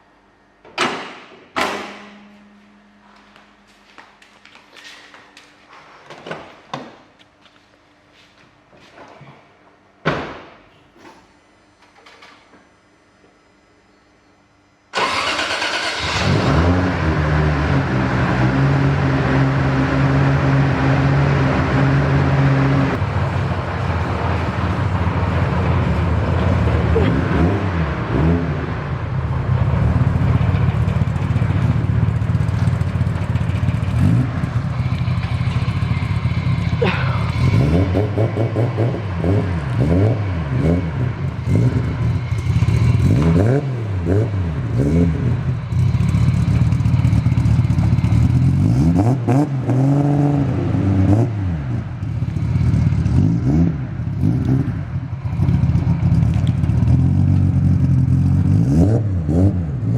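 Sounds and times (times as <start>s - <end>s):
car engine revving: 15.0s - 59.9s.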